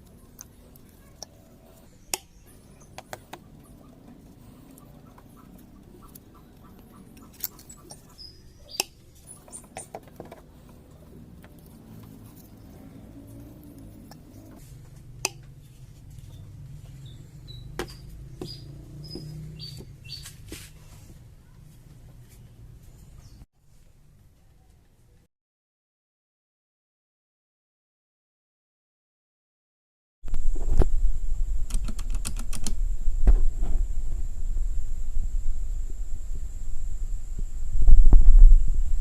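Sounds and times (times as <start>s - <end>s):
plastic parts squeaking: 2.5s - 14.6s
low hum: 30.3s - 39.0s.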